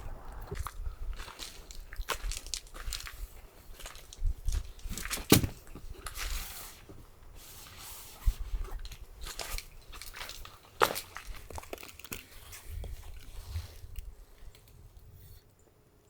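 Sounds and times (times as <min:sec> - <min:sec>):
handling clicks and rustles: 0:04.0 - 0:07.0, 0:08.6 - 0:15.6.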